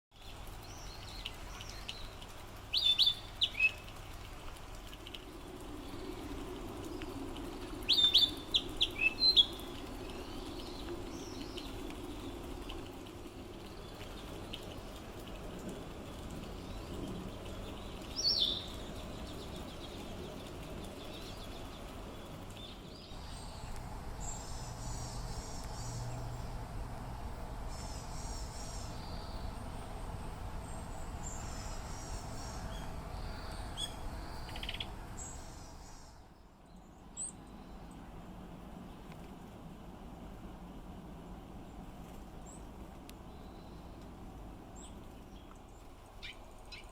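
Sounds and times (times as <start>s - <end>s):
steady background noise: 3.8s - 46.9s
small birds chirping: 16.5s - 38.1s.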